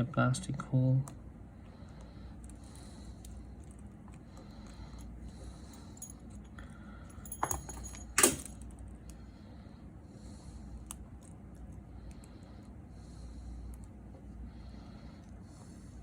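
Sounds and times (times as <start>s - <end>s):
small metal tools clinking: 7.1s - 8.6s
sharp metal clatters: 7.2s - 8.6s.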